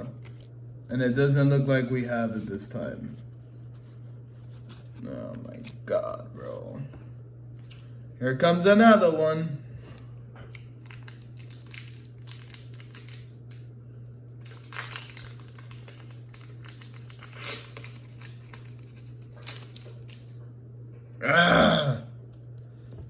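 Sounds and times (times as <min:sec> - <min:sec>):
foil wrapper crinkling and tearing: 0:10.5 - 0:20.4.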